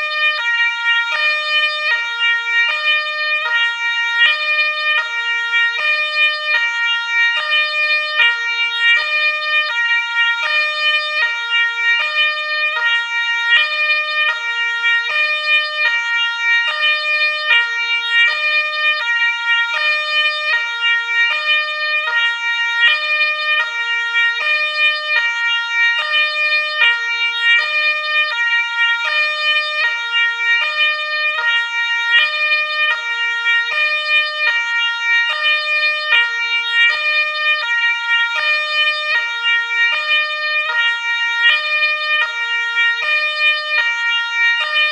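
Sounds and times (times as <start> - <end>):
two-tone ambulance siren: 0.0 - 44.9.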